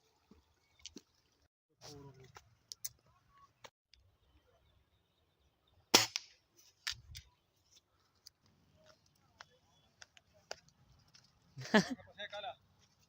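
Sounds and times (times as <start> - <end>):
air rifle shot: 5.9 - 6.4.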